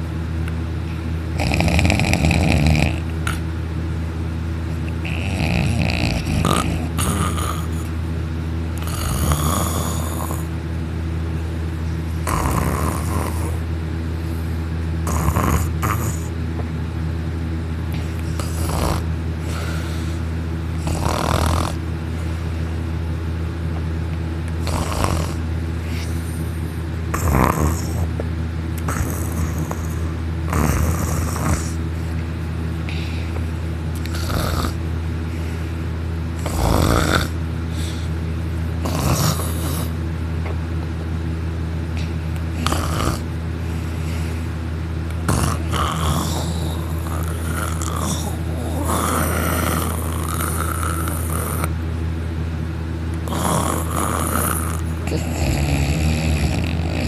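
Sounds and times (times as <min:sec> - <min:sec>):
steady low hum: 0:00.0 - 0:57.0
man snoring heavily: 0:01.3 - 0:03.5, 0:04.9 - 0:07.9, 0:08.8 - 0:10.6, 0:12.1 - 0:13.7, 0:14.3 - 0:16.4, 0:17.9 - 0:22.4, 0:24.6 - 0:28.2, 0:28.8 - 0:31.8, 0:34.0 - 0:35.8, 0:36.4 - 0:38.2, 0:38.8 - 0:40.0, 0:42.5 - 0:51.8, 0:53.2 - 0:57.0.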